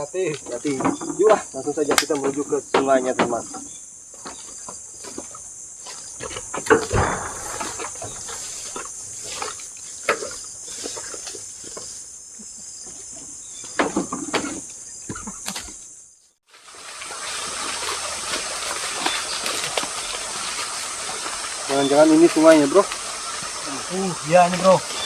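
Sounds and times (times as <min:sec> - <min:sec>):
hissing background: 0:00.0 - 0:25.0
insects droning: 0:00.0 - 0:25.0
rustles and steps in undergrowth: 0:04.1 - 0:12.2, 0:15.5 - 0:25.0.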